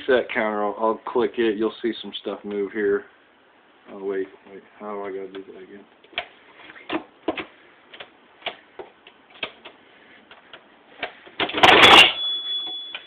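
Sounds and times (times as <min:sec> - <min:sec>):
cash register mechanical clatter: 0:11.4 - 0:13.0
cash register bell ringing: 0:11.6 - 0:13.0.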